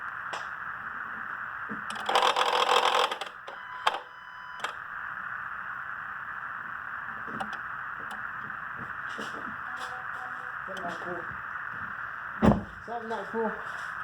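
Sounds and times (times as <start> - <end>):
throttle body buzzing and grinding: 1.7 - 4.0
brief tone: 3.5 - 4.8, 9.6 - 10.6.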